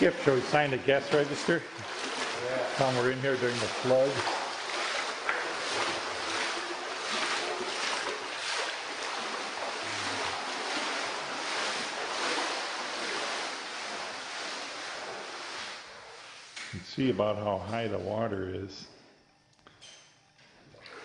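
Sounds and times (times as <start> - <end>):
water splashing from wading: 0.0 - 16.6.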